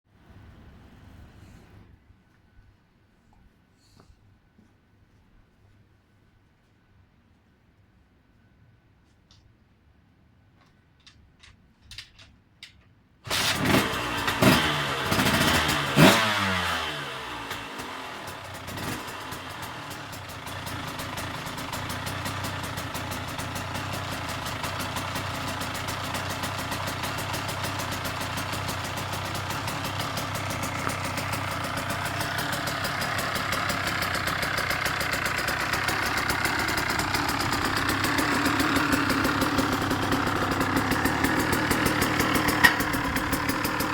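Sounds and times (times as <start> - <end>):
two-stroke engine revving and idling: 13.3 - 43.9.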